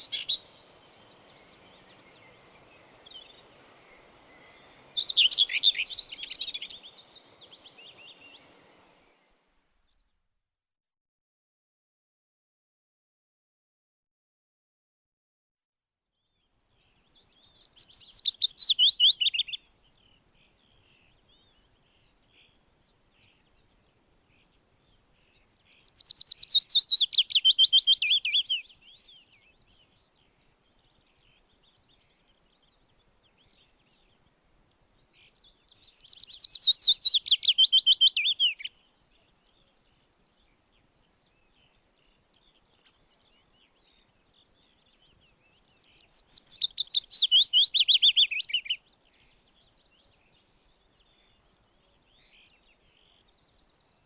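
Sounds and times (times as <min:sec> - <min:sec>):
songbird trilling: 0:00.0 - 0:00.6, 0:04.3 - 0:08.4, 0:17.0 - 0:19.6, 0:25.2 - 0:29.5, 0:35.0 - 0:38.8, 0:45.6 - 0:49.3
faint bird chirps: 0:00.0 - 0:10.3, 0:16.1 - 0:54.0.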